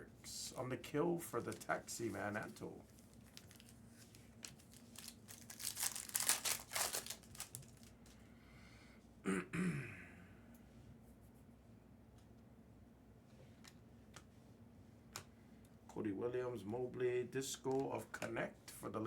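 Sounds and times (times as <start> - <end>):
foil wrapper tearing and crinkling: 2.9 - 8.0
person clearing throat: 9.2 - 10.3.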